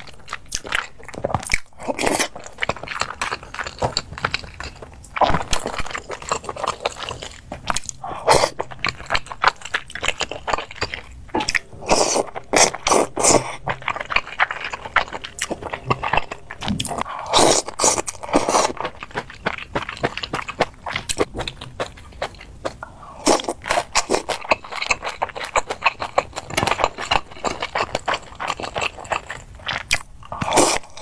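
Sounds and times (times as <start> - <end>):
person chewing crunchy food: 0.0 - 31.0.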